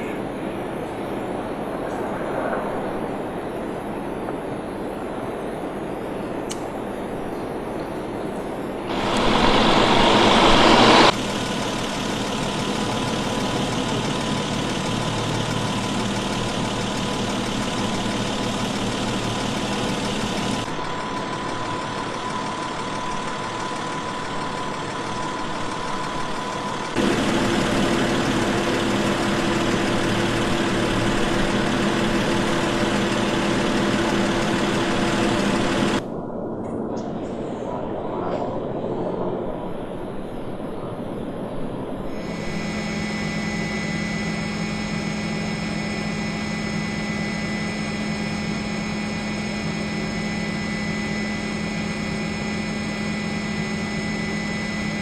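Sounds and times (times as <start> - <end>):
steady engine noise: 8.8 - 36.1, 42.1 - 55.0.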